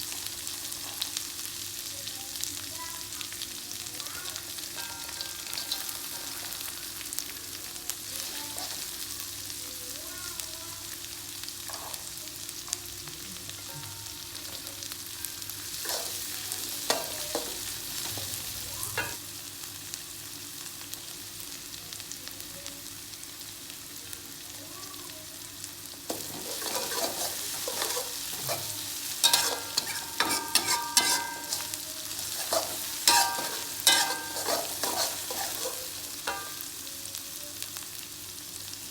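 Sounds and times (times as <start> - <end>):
food sizzling in hot oil: 0.0 - 38.9
utensil scraping a pan: 26.1 - 36.6.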